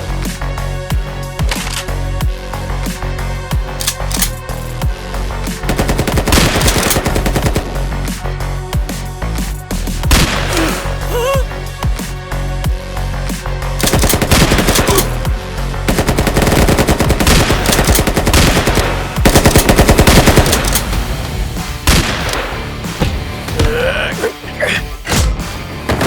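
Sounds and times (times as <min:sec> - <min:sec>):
background music: 0:00.0 - 0:26.0
rapid automatic gunfire: 0:05.7 - 0:07.9, 0:13.8 - 0:21.0.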